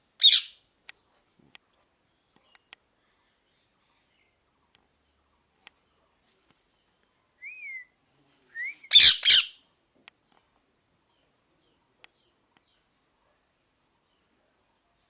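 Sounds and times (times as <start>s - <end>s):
parrot squawks: 0.2s - 0.6s, 8.9s - 9.6s
parrot whistling: 8.6s - 9.5s.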